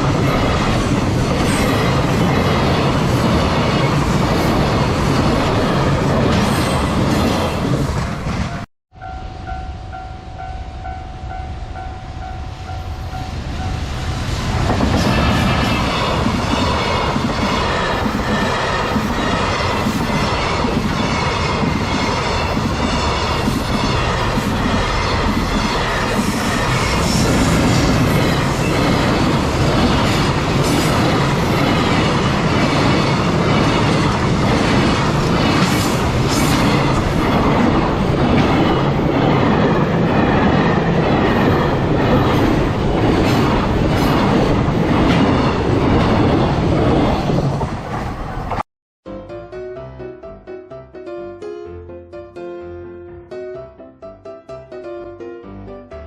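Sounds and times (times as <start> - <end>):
level crossing warning bell: 8.9 - 14.1.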